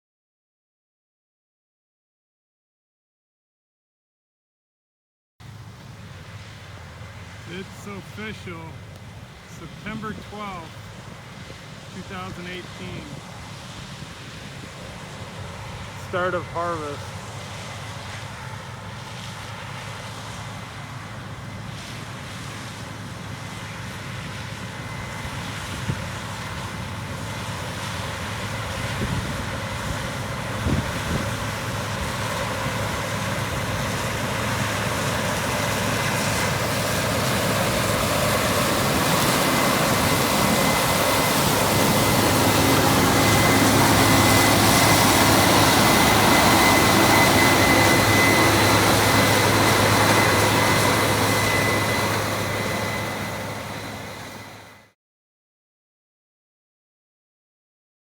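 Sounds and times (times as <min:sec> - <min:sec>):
combine harvester drone: 0:05.4 - 0:54.9
thin high whine: 0:37.4 - 0:54.9.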